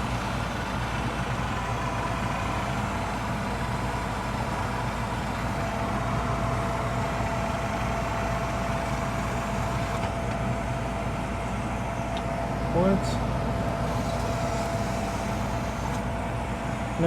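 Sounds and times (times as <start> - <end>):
furnace motor and burner hum: 0.0 - 17.0.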